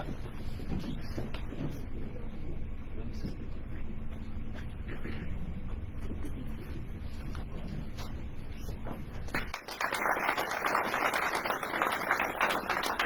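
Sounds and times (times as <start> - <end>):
low room rumble: 0.0 - 13.0
audience applause: 9.5 - 13.0.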